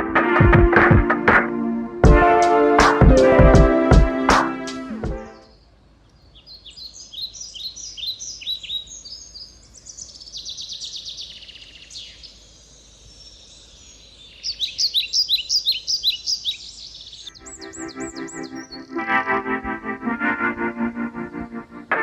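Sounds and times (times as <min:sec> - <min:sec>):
faint outdoor background hiss: 0:01.1 - 0:22.0
birds chirping and trilling: 0:05.1 - 0:19.7.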